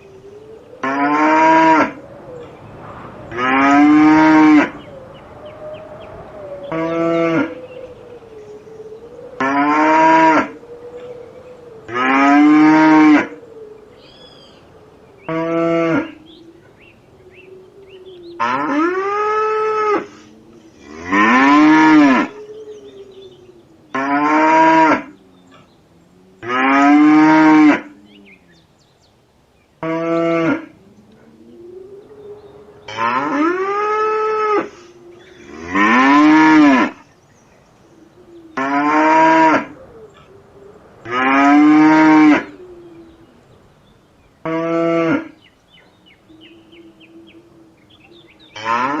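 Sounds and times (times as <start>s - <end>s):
cattle mooing: 3.3s - 4.8s, 18.4s - 22.4s, 32.9s - 37.0s, 48.6s - 49.0s.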